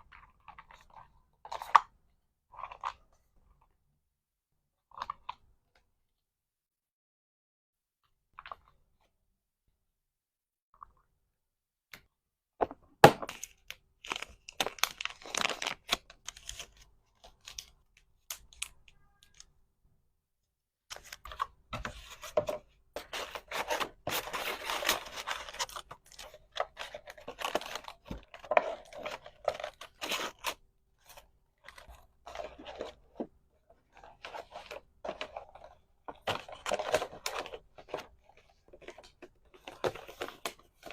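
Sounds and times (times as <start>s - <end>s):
packaging wrap crinkling: 13.3s - 16.8s.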